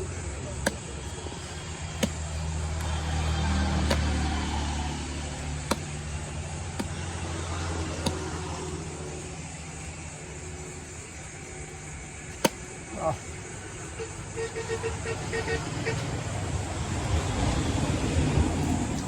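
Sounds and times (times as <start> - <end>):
low engine rumble: 0.0 - 19.0
sharp knocks: 2.0 - 3.0, 3.8 - 4.4, 5.6 - 7.3.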